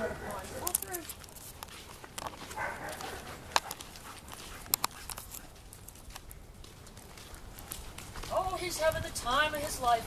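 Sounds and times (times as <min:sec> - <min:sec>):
faint background noise: 0:00.0 - 0:10.0.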